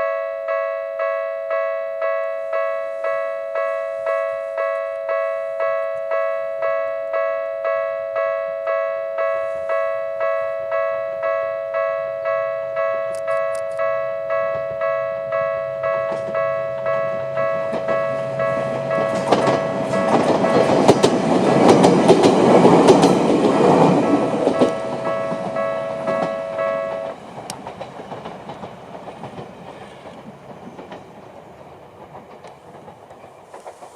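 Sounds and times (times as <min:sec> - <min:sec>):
level crossing warning bell: 0:00.0 - 0:27.8
train wheels clacking over rails: 0:15.8 - 0:33.9.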